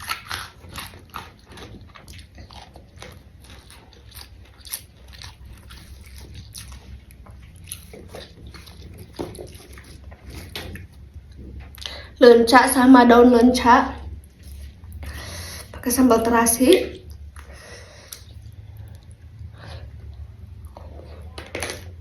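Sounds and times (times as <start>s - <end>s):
crunching raw vegetables: 0.0s - 12.2s.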